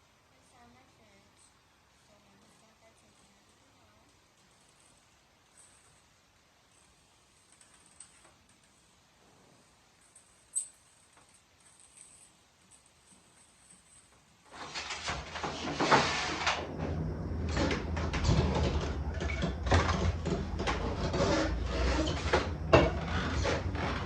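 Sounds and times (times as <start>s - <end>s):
containers clunking and knocking: 15.0s - 24.0s.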